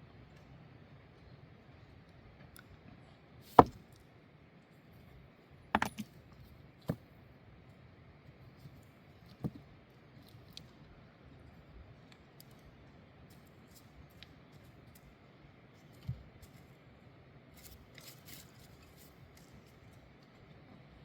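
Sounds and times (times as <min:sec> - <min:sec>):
hard objects knocking: 0:05.8 - 0:06.0.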